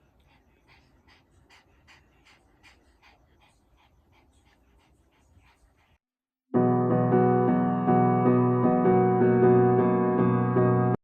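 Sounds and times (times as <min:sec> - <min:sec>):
dog panting: 0:00.0 - 0:06.1.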